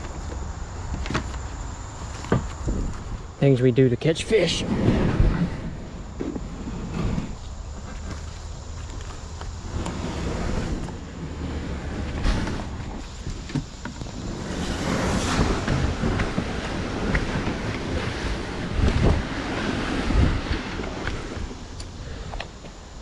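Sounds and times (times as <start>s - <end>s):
wind buffeting microphone: 2.3s - 3.4s, 4.3s - 22.6s.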